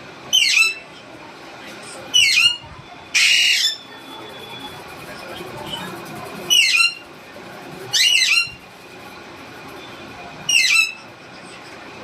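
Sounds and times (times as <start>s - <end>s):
parrot squawking: 0.3s - 0.9s, 2.1s - 4.7s, 5.6s - 7.1s, 7.8s - 8.7s, 10.5s - 11.1s.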